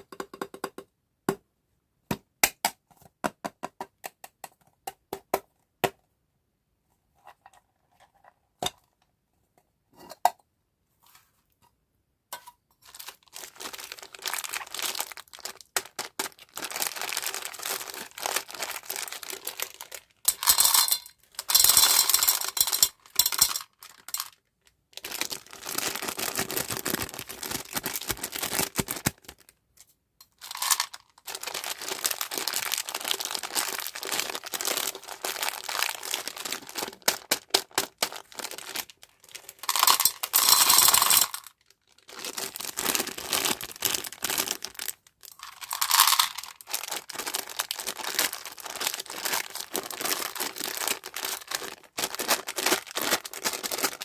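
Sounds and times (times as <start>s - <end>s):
candy wrappers crinkling and tearing: 12.8s - 29.5s, 30.4s - 54.0s.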